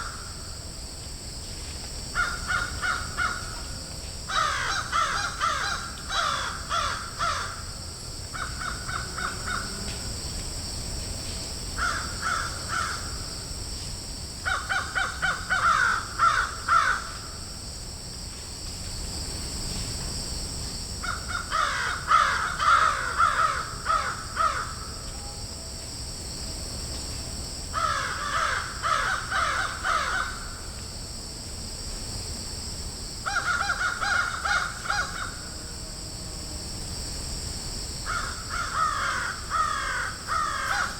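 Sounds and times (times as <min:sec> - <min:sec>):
crows cawing: 0:02.2 - 0:03.6, 0:04.3 - 0:07.7, 0:08.4 - 0:09.7, 0:11.8 - 0:13.1, 0:14.5 - 0:17.2, 0:21.0 - 0:24.9, 0:27.8 - 0:30.6, 0:33.3 - 0:35.5, 0:38.1 - 0:40.9.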